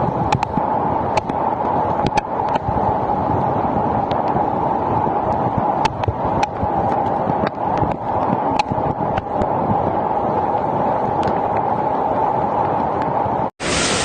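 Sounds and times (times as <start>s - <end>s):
heavy rain hissing: 13.6s - 14.0s.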